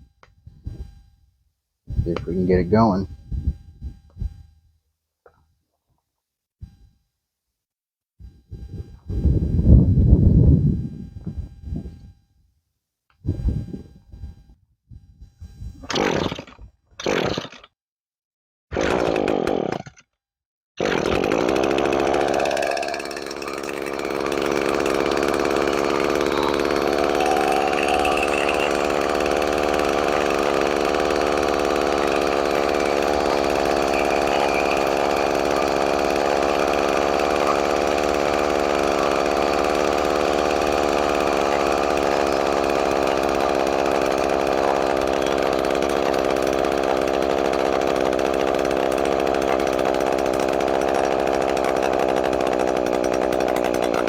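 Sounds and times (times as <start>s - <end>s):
string trimmer engine starting: 18.8s - 19.8s, 20.8s - 54.0s.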